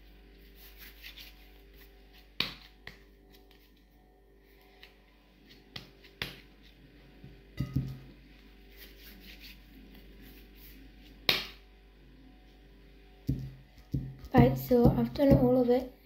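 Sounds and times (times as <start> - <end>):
clay tubs tapping on a table: 13.3 - 15.6.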